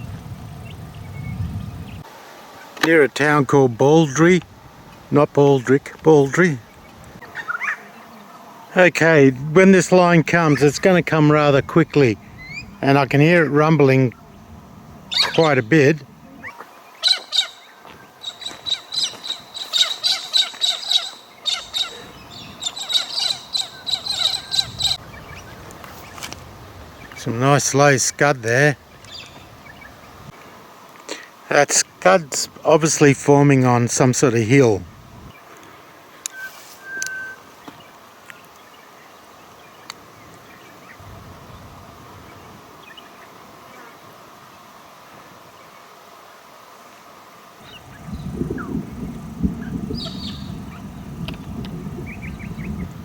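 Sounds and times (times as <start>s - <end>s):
faint outdoor background: 0.0s - 53.0s
birds chirping: 5.2s - 44.0s, 47.6s - 53.0s
birds whistling: 12.2s - 12.8s, 15.1s - 15.8s, 16.4s - 26.2s, 36.2s - 37.9s, 47.6s - 51.0s, 52.0s - 53.0s
faint bird chirps: 36.2s - 39.9s, 49.9s - 50.9s
low rumble: 47.6s - 53.0s.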